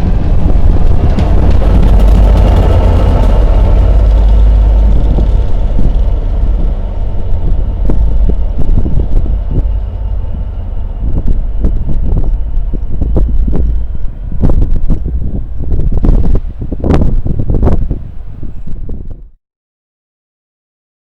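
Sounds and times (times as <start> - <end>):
wheels clicking on rails: 0.0 - 19.1
train rumbling past: 0.0 - 19.4
wind buffeting microphone: 0.0 - 19.4.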